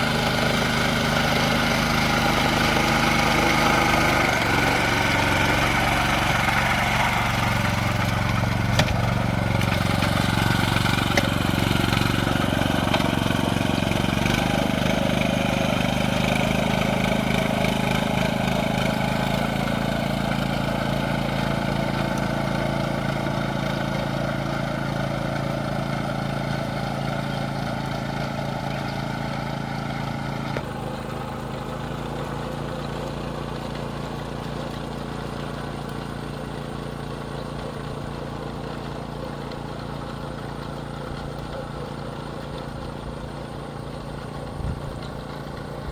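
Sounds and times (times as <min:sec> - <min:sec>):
small engine running: 0:00.0 - 0:45.9.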